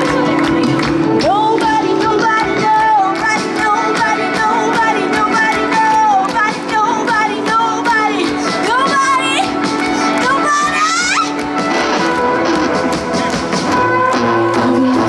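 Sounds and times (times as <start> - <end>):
bending lead melody line: 0.0 - 15.0
drums keeping a steady beat: 0.0 - 15.0.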